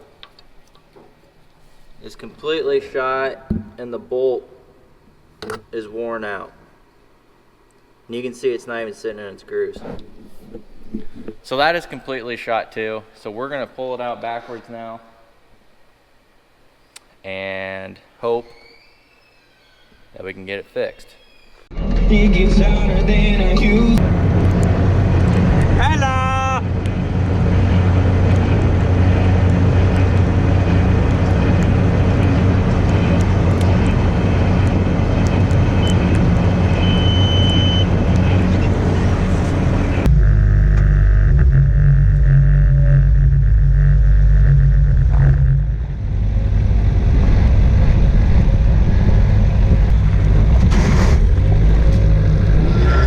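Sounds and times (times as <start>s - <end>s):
farm machinery engine drone: 23.5s - 53.0s.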